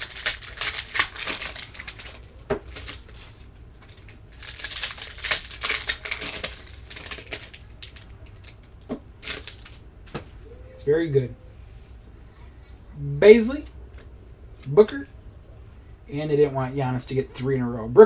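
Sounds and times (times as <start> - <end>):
cards clicking and rustling: 0.0 - 10.5.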